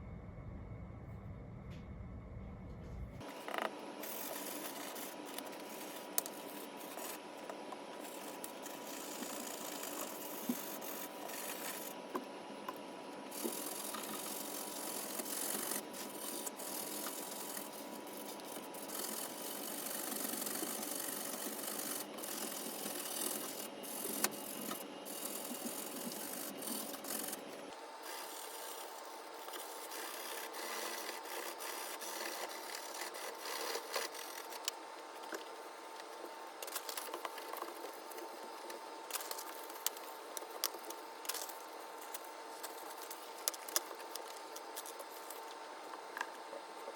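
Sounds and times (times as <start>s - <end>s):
brush scrubbing a surface: 13.3s - 34.5s.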